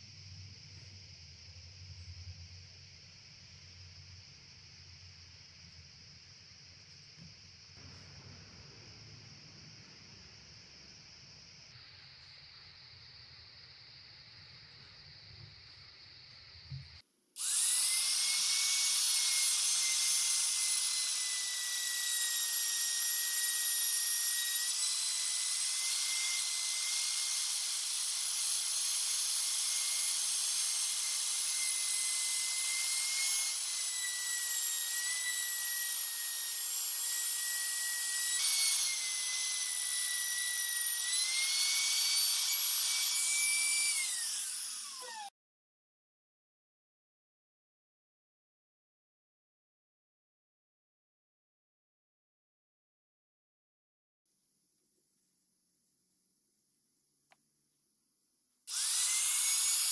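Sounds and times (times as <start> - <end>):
power tool whining on wood: 17.4 - 45.3, 58.7 - 59.9.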